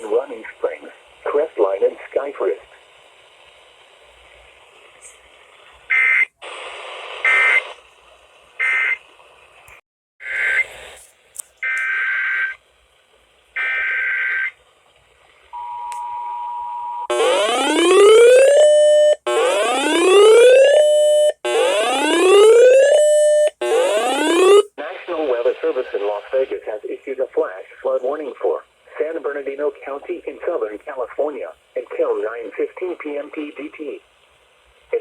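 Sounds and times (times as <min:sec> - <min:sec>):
two-tone attention signal: 0:15.6 - 0:24.7
rising whoop alert tone: 0:21.6 - 0:24.7.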